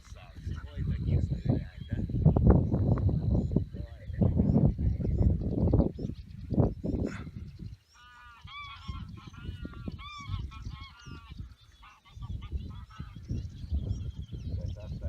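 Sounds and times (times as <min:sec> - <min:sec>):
geese honking: 0:07.9 - 0:13.3.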